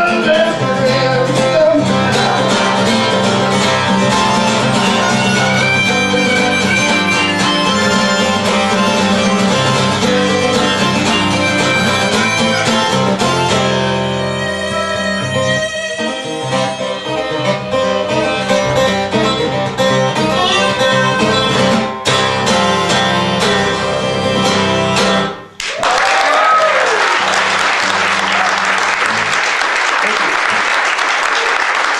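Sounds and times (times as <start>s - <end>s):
acoustic blues guitar and fiddle: 0.0s - 25.5s
audience applause and cheer: 25.6s - 31.9s.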